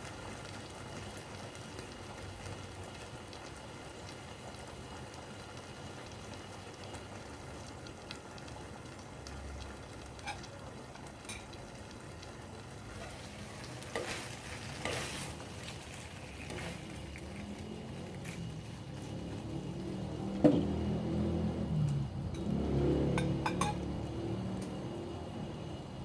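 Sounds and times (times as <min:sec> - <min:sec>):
chicken sizzling in a pan: 0:00.0 - 0:25.8
scrapes in pan: 0:13.0 - 0:17.4.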